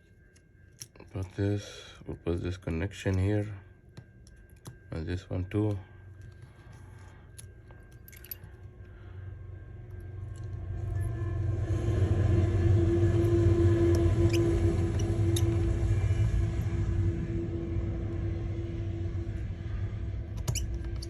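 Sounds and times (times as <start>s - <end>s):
machine humming: 8.8s - 21.0s.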